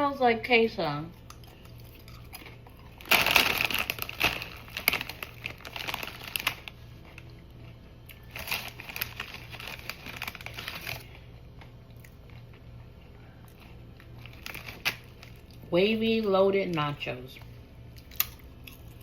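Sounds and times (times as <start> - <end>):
plastic chip bag rustling: 2.0 - 7.3, 8.1 - 11.2, 14.2 - 15.5.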